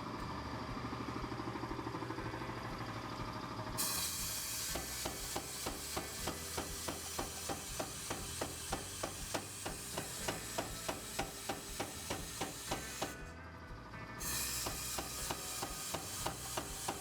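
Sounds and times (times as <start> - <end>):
hammer striking hot steel: 3.8 - 13.4, 14.2 - 17.0.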